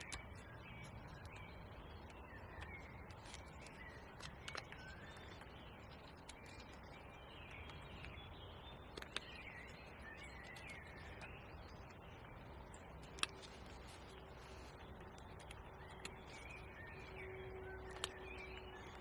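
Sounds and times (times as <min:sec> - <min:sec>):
birds chirping and whistling: 0:00.0 - 0:19.0
sharp clicks: 0:08.8 - 0:11.2.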